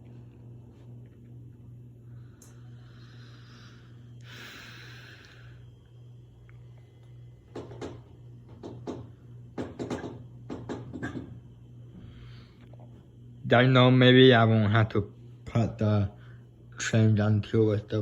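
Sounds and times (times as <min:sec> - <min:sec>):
ceiling fan motor humming: 0:00.0 - 0:18.0
sharp clicks and knocks: 0:07.5 - 0:11.3.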